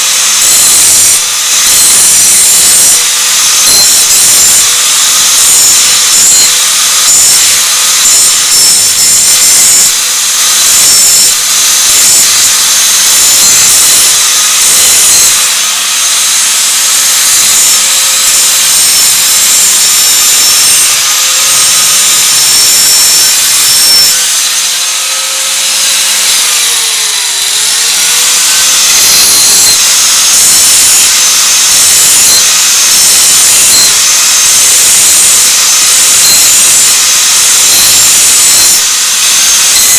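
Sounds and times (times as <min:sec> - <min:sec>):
electric grinder grinding metal: 0:00.0 - 0:39.9.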